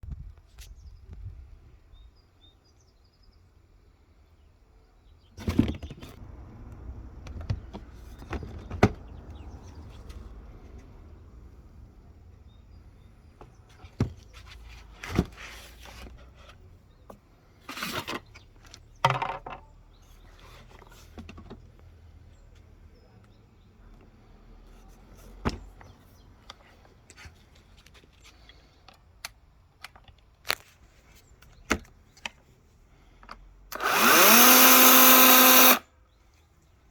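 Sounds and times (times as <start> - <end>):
electric chainsaw motor whining: 33.7 - 35.8.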